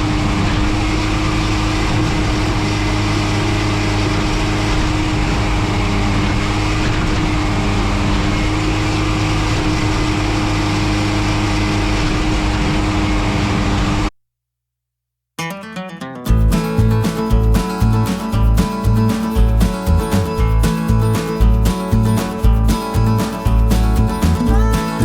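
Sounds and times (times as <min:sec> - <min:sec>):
acoustic guitar music: 0:00.0 - 0:05.8, 0:15.4 - 0:25.0.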